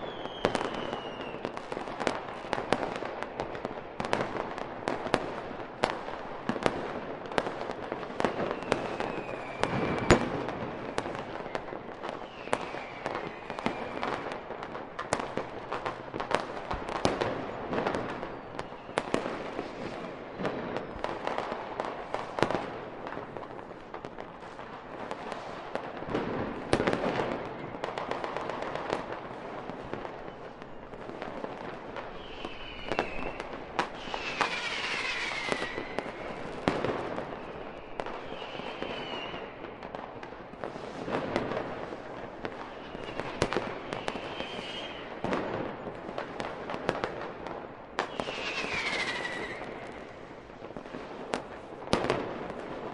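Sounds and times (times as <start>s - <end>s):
firework whistles gliding in pitch: 0.0s - 1.6s, 8.1s - 14.3s, 18.0s - 21.4s, 32.0s - 39.8s, 42.6s - 45.3s, 48.0s - 50.4s
firework bangs and crackles: 0.0s - 52.9s.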